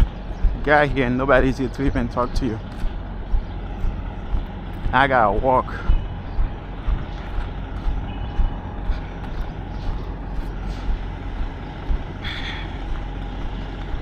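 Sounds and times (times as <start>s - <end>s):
truck engine running: 0.0s - 14.0s.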